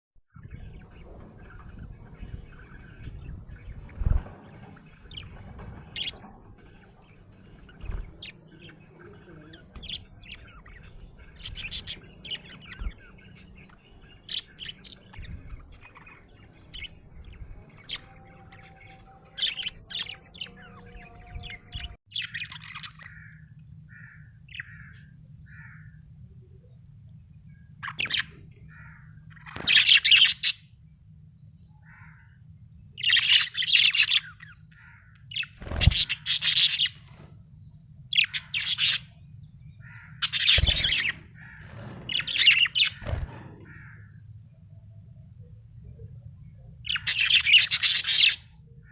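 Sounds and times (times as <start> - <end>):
budgerigar chirping and chattering: 0.7 - 22.7, 46.9 - 48.4.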